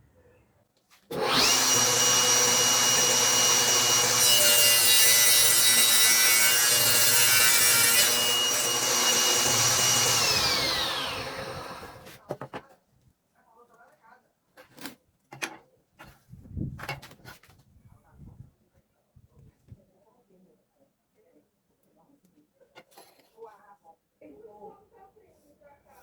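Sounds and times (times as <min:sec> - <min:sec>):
power tool spinning down: 0:01.1 - 0:12.1
power tool cutting wood: 0:01.1 - 0:12.2
power tool high whine: 0:01.2 - 0:12.1.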